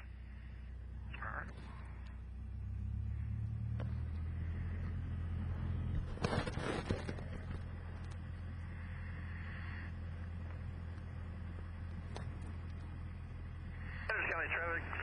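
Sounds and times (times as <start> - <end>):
airplane engine droning: 0.0 - 15.0
crackle of clicks: 6.4 - 8.3.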